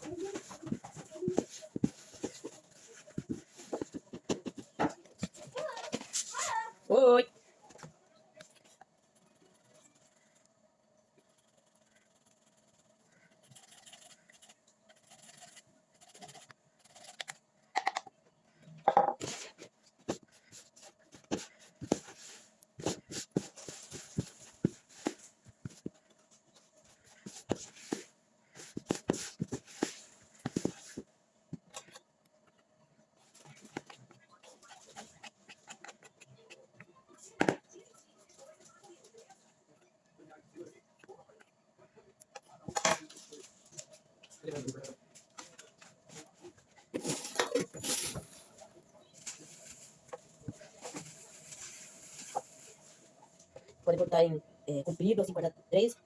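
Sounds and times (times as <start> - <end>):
kitchen utensils knocking and scraping: 18.9 - 19.4.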